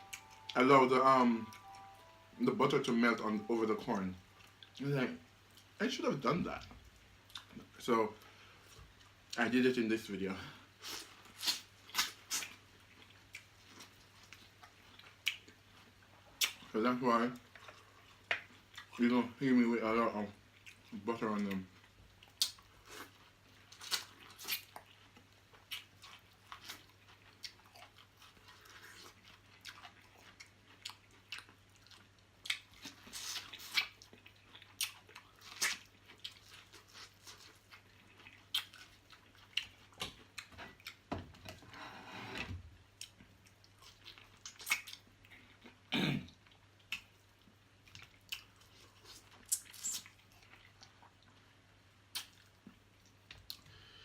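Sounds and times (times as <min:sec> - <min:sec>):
wet chewing and lip smacks: 0:10.9 - 0:16.7, 0:20.5 - 0:41.1, 0:43.0 - 0:45.8, 0:46.4 - 0:51.5, 0:52.1 - 0:53.7.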